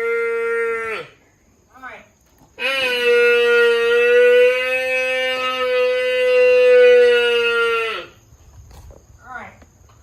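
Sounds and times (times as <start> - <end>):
water buffalo calling: 2.6 - 8.2.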